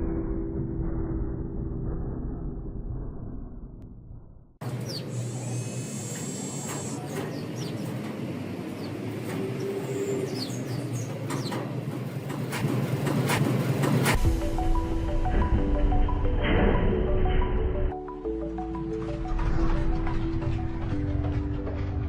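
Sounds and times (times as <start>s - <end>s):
small birds chirping: 4.6s - 11.8s
urban background rumble: 4.6s - 22.0s.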